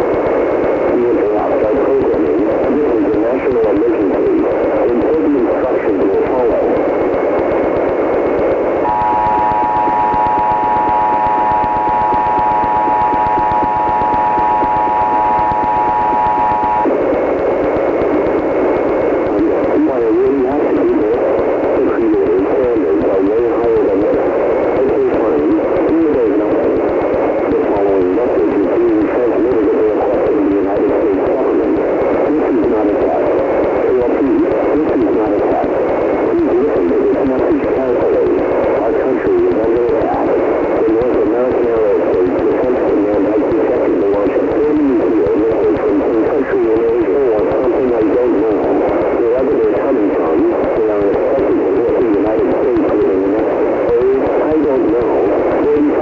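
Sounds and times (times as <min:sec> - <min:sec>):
radio static hiss: 0:00.0 - 0:56.0
two-tone alert alarm: 0:08.8 - 0:16.8.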